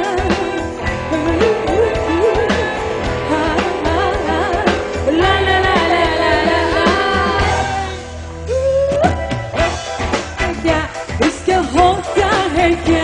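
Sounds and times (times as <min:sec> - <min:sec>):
live band playing: 0:00.0 - 0:13.0
person singing long held notes: 0:00.7 - 0:09.1.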